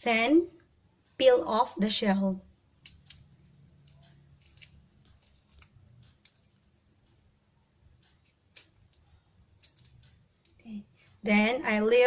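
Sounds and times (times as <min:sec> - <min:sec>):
prawn shell peeling clicks: 0:02.8 - 0:06.7, 0:08.1 - 0:09.0, 0:09.6 - 0:10.6.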